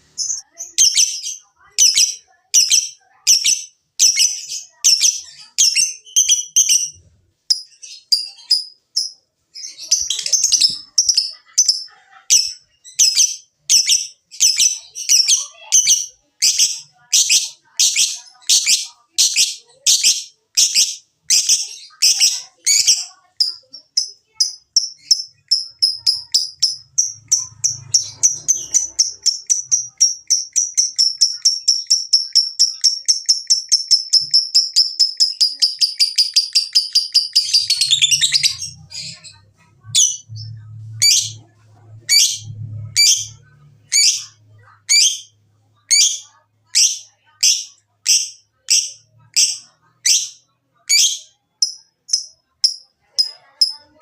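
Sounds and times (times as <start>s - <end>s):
lovebird chattering call: 24.8s - 40.3s.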